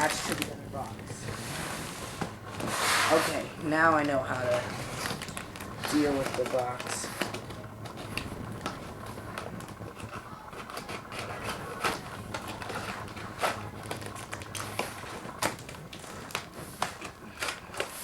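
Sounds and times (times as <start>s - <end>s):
cardboard scraping and rustling: 0.0s - 8.4s
steady low hum: 0.0s - 18.0s.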